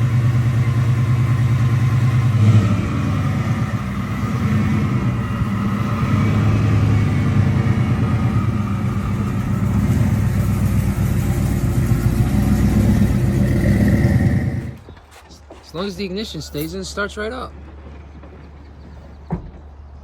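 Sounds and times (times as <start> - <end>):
car engine idling and revving: 0.0 - 14.8.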